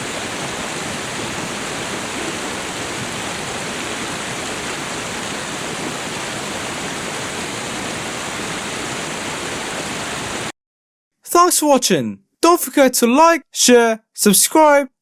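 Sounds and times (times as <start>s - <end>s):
river water flowing: 0.0s - 10.5s.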